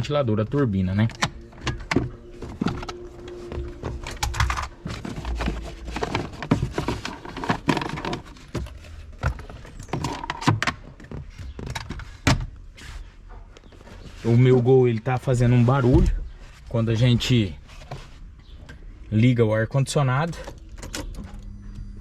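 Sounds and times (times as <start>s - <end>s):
handling clicks and knocks: 0.9s - 12.7s.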